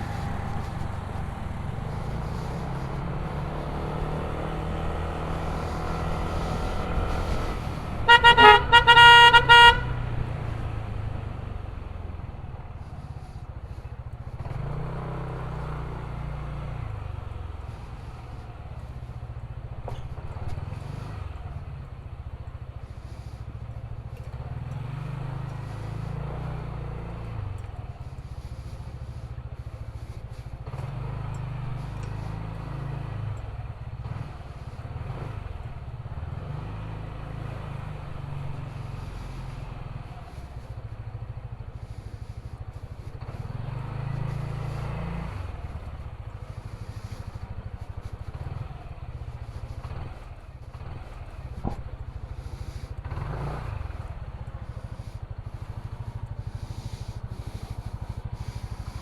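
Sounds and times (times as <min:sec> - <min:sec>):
motor scooter engine: 0:00.0 - 0:59.0
vehicle horn toots: 0:06.5 - 0:10.3.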